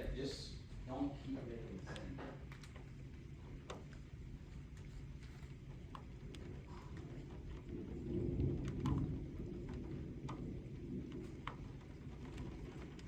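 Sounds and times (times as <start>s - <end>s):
rain drips ticking: 1.6s - 13.0s
distant thunder rumbling: 6.2s - 13.0s.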